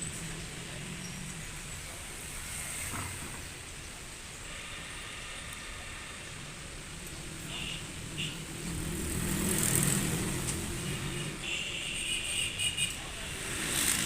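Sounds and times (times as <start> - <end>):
road traffic: 0.0 - 14.0
vehicle passing: 4.6 - 11.4, 13.1 - 14.0.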